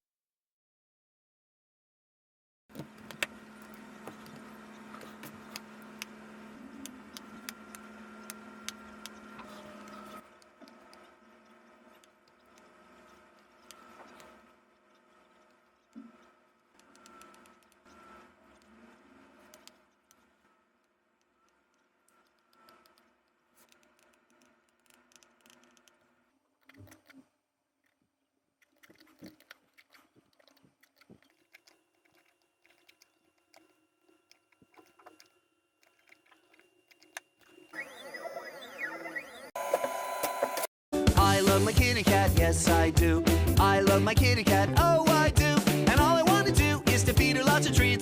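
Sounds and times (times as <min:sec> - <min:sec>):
small machine humming: 0:02.7 - 0:27.0, 0:31.0 - 0:40.7
faint clicks and ticks: 0:02.8 - 0:37.8.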